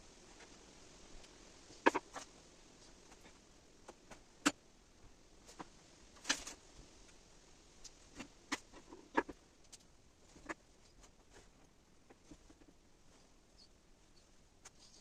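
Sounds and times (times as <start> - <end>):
light clicks and taps: 7.8 - 13.2.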